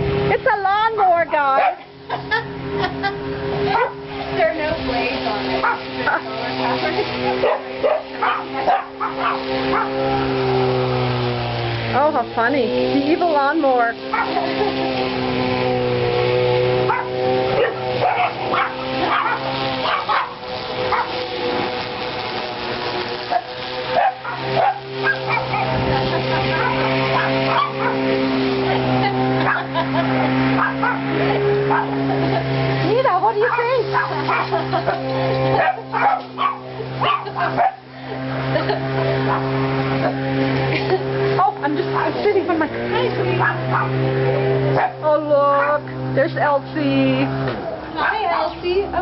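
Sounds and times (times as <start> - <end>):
electric lawn mower hum: 0.0 - 49.0
dog barking: 1.4 - 1.9, 3.7 - 4.0, 5.6 - 6.2, 7.4 - 10.0, 14.1 - 14.4, 16.9 - 21.1, 23.3 - 25.7, 26.5 - 28.0, 30.6 - 31.1, 31.7 - 32.0, 33.1 - 34.6, 35.6 - 37.8, 43.4 - 44.0, 44.8 - 45.0, 48.0 - 48.5.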